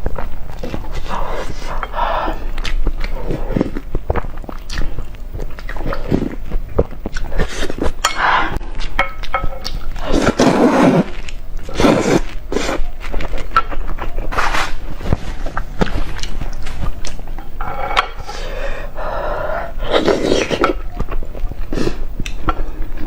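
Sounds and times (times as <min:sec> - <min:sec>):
chewing and mouth clicks: 0:00.1 - 0:08.0, 0:08.7 - 0:10.4, 0:15.4 - 0:18.2.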